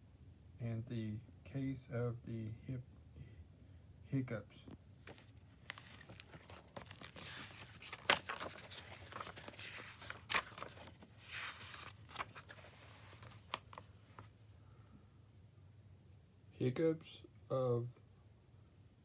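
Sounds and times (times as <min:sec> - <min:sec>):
paper pages rustling: 0:05.0 - 0:14.4.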